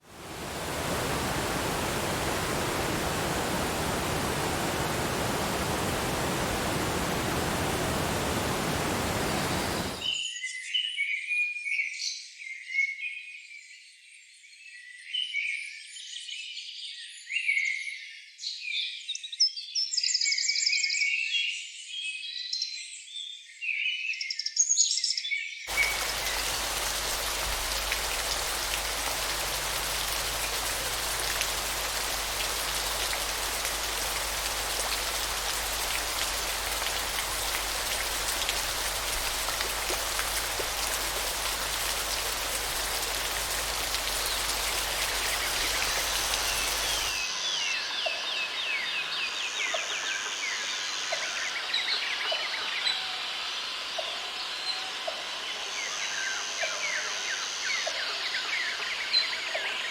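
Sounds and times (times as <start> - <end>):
steady rain: 0.0 - 10.2, 25.7 - 49.6.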